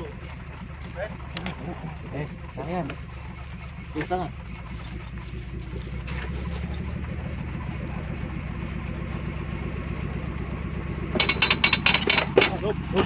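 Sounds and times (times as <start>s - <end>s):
engine idling: 0.0s - 13.0s
loud metallic clanking and rattling: 11.1s - 13.0s.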